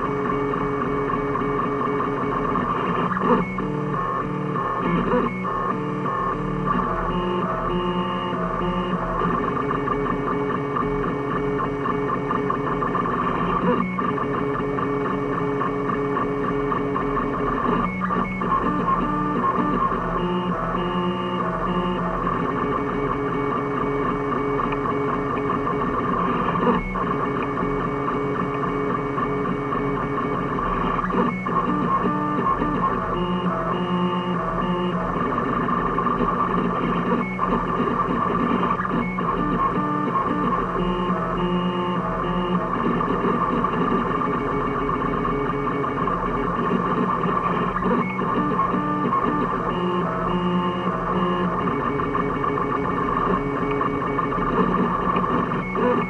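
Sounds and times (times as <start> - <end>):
printer stepper motors whining: 0.0 - 56.0.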